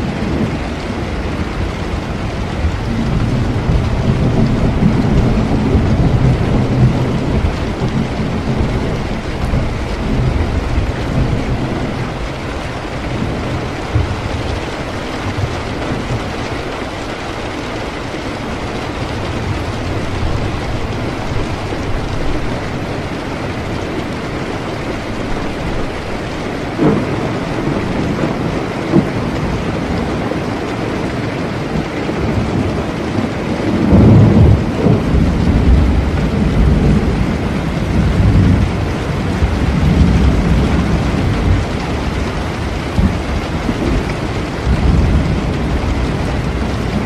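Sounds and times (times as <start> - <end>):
heavy rain: 0.0 - 47.0
rolling rumble of thunder: 0.0 - 47.0
thunder cracks: 2.3 - 16.3, 26.6 - 30.1.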